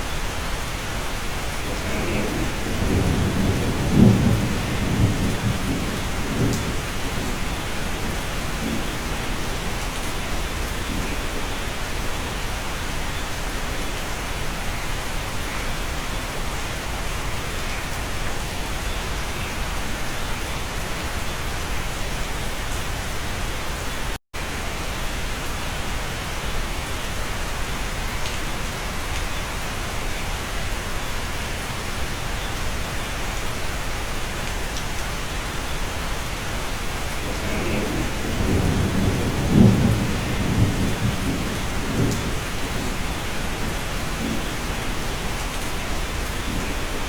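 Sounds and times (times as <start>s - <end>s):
steady rain from inside: 0.0s - 47.0s
low rumble of thunder: 1.3s - 13.0s, 36.6s - 47.0s.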